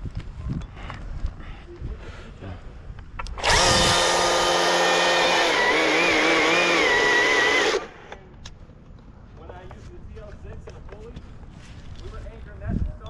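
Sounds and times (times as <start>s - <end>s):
chainsaw at full throttle: 3.4s - 8.0s.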